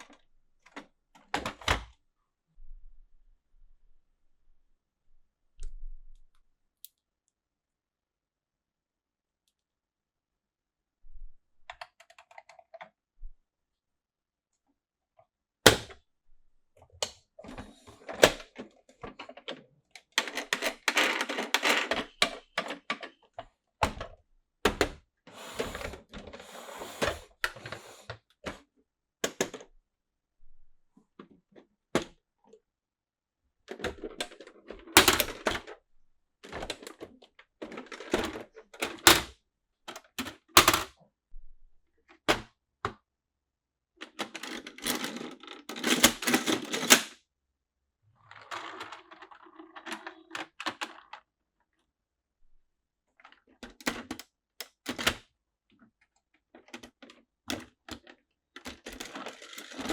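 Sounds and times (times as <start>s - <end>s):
plastic clicks and knocks: 39.9s - 41.0s.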